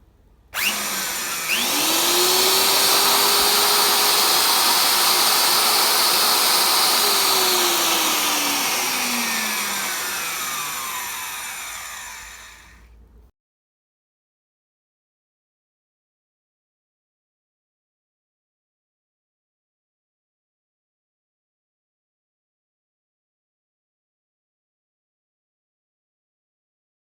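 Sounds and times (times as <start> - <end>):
core drill motor whine: 0.6 - 12.8.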